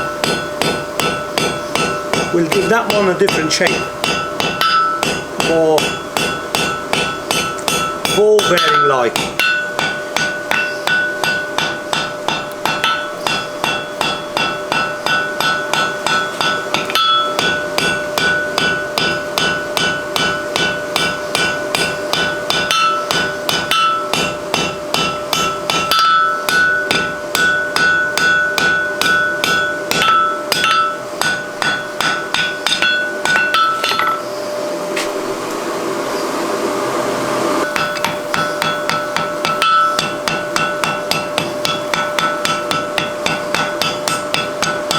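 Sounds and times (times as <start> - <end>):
anvil ringing: 0.0 - 34.4, 37.6 - 44.9
hammer striking hot steel: 0.0 - 34.4, 37.6 - 44.9.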